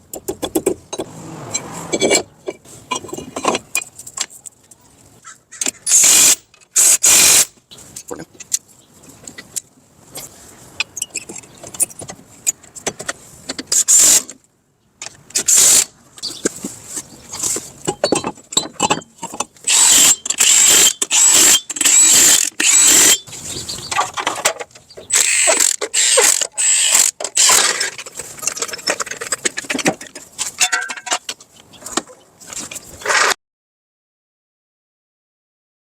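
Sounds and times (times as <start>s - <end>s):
tools clicking and rattling: 17.4s - 23.3s, 24.0s - 31.4s.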